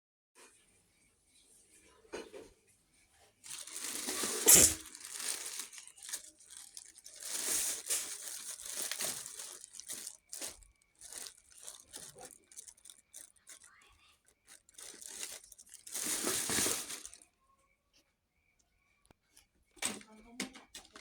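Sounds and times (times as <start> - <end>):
crinkling and rustling: 2.2 - 17.3, 19.3 - 21.0.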